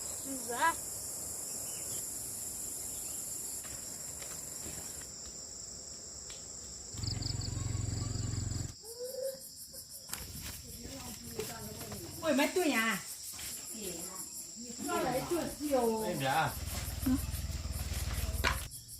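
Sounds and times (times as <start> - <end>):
insects chorus: 0.0 - 18.9.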